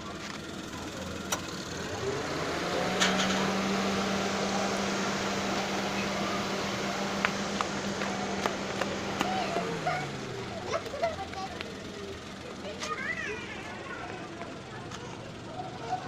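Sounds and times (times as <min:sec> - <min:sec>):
air conditioning compressor hum: 0:00.0 - 0:12.4
car engine idling: 0:00.0 - 0:16.0.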